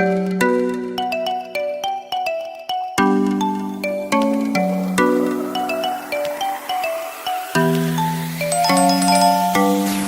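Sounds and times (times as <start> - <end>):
bouncy bell-like tune: 8.4 - 10.0.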